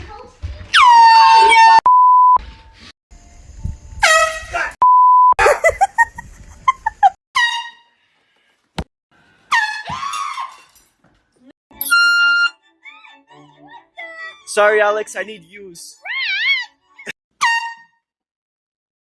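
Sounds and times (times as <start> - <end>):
censor bleep: 1.2 - 2.4, 4.8 - 5.4
air horn blasts: 4.0 - 4.8.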